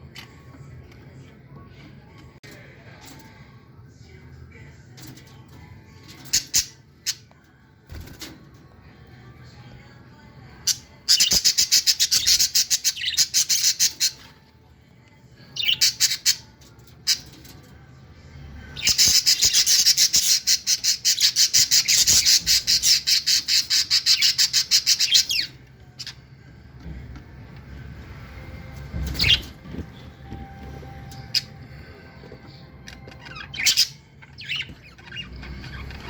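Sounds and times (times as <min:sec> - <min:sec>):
parakeets squawking chirps: 0:06.3 - 0:07.3, 0:10.7 - 0:14.4, 0:15.6 - 0:17.4, 0:18.7 - 0:26.4, 0:29.1 - 0:29.5, 0:33.0 - 0:36.0.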